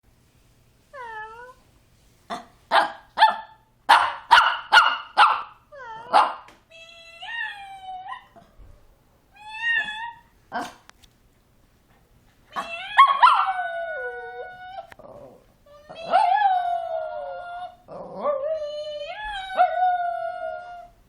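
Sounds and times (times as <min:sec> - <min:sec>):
dog barking: 0:02.7 - 0:06.5
cat meowing: 0:09.4 - 0:10.3
dog howling: 0:12.6 - 0:21.0.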